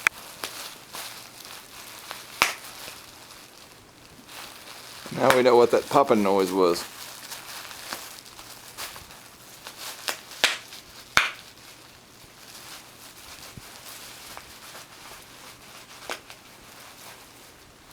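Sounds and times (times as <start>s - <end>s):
bubble wrap popping: 0.0s - 17.9s.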